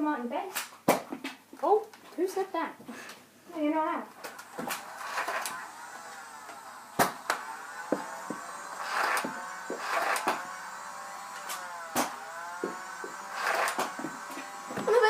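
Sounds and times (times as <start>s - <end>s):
toy blaster motor whining: 4.2s - 15.0s.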